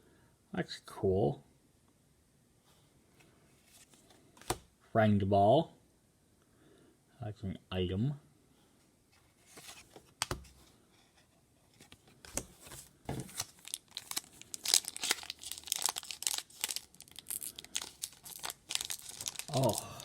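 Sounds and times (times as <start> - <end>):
foil pack tearing and crinkling: 13.2 - 20.0.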